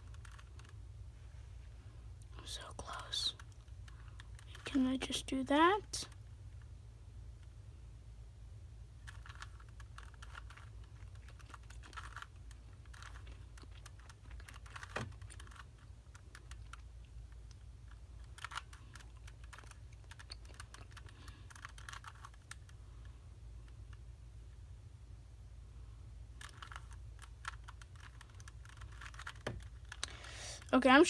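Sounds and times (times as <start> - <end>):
puzzle cube clicking as twisted: 0.0 - 0.8, 9.0 - 22.8, 26.4 - 30.7.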